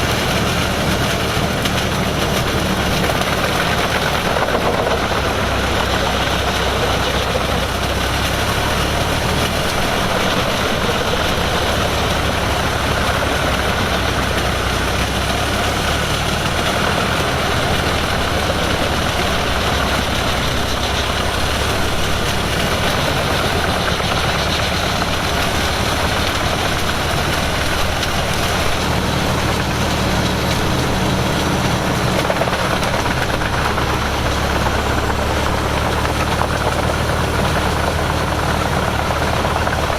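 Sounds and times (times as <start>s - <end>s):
heavy diesel machinery running: 0.0s - 39.9s.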